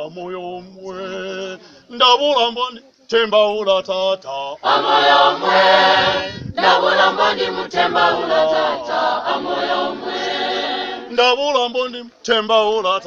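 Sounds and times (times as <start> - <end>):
choir singing: 4.6 - 11.2.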